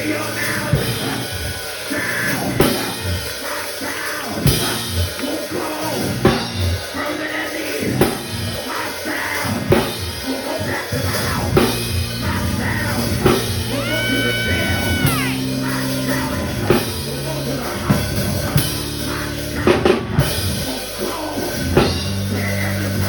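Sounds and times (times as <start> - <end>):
church band music: 0.0 - 23.0
sustained bass notes: 11.0 - 23.0
keyboard notes: 11.1 - 23.0.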